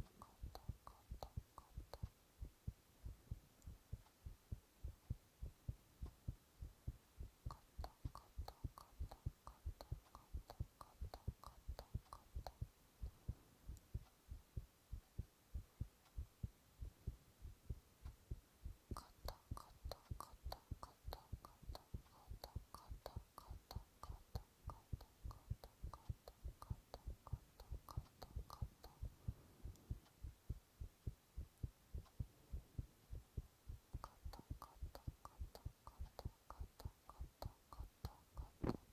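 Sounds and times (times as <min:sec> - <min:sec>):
heartbeat thumping: 0:00.0 - 0:37.5
whispered mouth sounds: 0:07.4 - 0:12.7, 0:18.9 - 0:30.0, 0:33.9 - 0:38.9.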